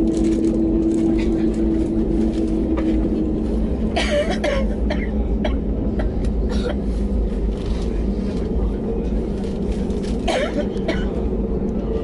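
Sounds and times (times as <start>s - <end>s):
airliner cabin rumble: 0.0s - 12.0s
person coughing: 4.0s - 6.8s, 10.3s - 11.2s.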